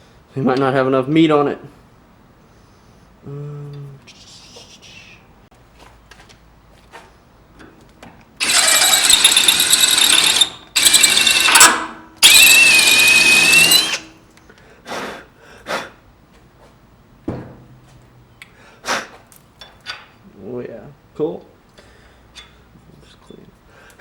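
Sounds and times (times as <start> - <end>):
power drill boring into brass: 8.4 - 14.2.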